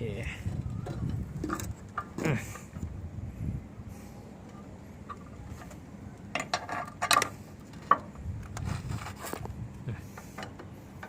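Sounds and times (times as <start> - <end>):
small hard parts clicking and knocking: 5.1 - 8.7.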